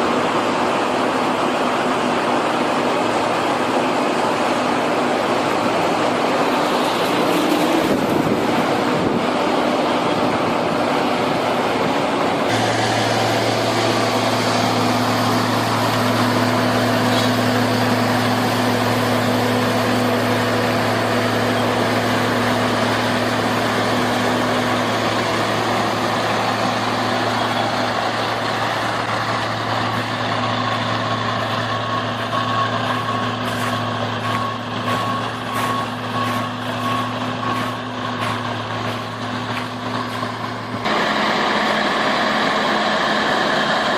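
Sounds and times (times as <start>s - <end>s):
heavy diesel machine engine running: 0.0s - 43.9s
faint pulsing beep: 31.5s - 37.9s.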